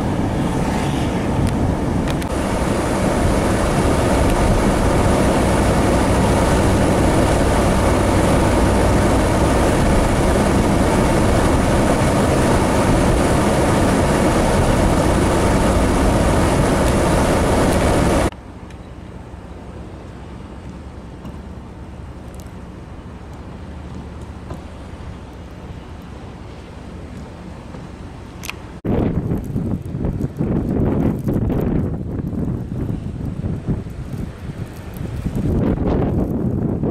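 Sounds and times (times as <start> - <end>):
blizzard wind buffeting microphone: 0.0 - 18.3, 19.2 - 36.9.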